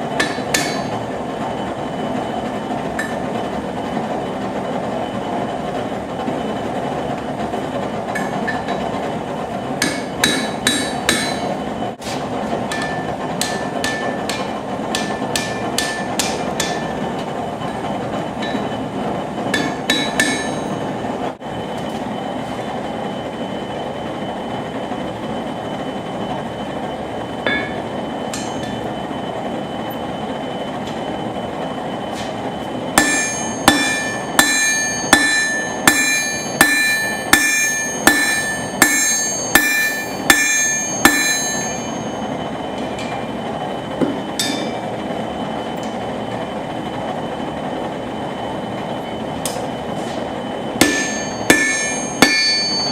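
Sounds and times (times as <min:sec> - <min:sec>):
hammer ringing on anvil: 0:00.2 - 0:01.0, 0:09.8 - 0:11.5, 0:12.7 - 0:16.9, 0:19.5 - 0:20.8, 0:27.4 - 0:28.8, 0:33.0 - 0:42.4, 0:44.0 - 0:44.8, 0:50.8 - 0:52.9.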